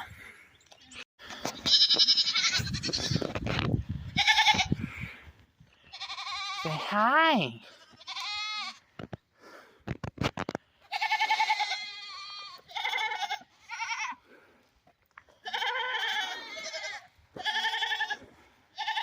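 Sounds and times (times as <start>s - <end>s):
goats bleating: 1.6s - 3.4s, 4.2s - 4.8s, 5.8s - 8.9s, 10.8s - 14.2s, 15.4s - 19.0s.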